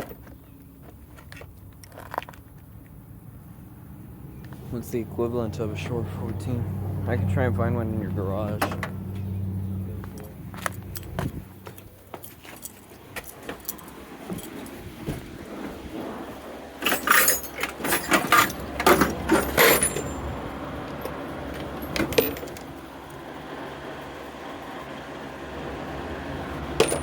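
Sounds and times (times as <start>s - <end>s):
metal parts clinking and rattling: 10.2s - 14.8s, 16.8s - 20.3s, 21.0s - 22.7s, 26.8s - 27.0s.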